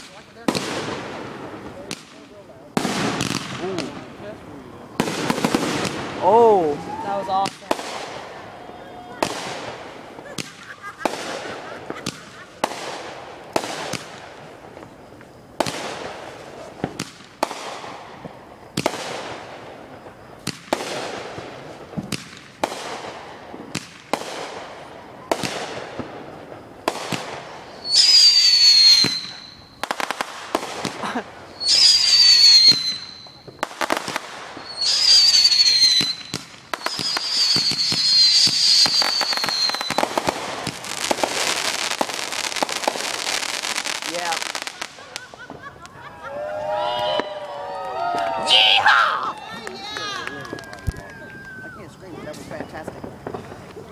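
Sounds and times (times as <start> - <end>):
dense firework crackling: 0.0 - 53.9
firework bangs: 0.0 - 53.9
hissing bursts with falling whistle: 6.2 - 9.5, 27.6 - 30.0, 31.5 - 33.5, 34.6 - 40.3, 46.1 - 49.5.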